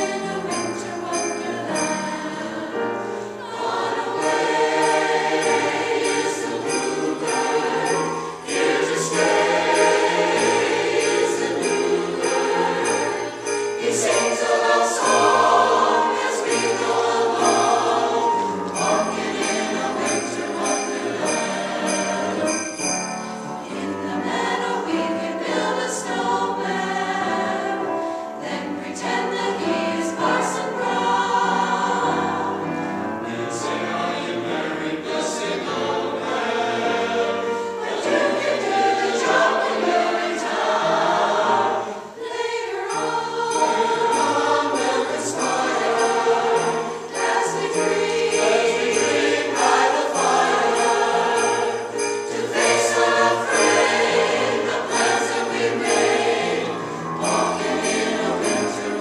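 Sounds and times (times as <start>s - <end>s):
jingle bells shaken: 0.0s - 2.4s, 4.2s - 23.7s, 42.8s - 59.0s
choir singing christmas song: 0.0s - 59.0s.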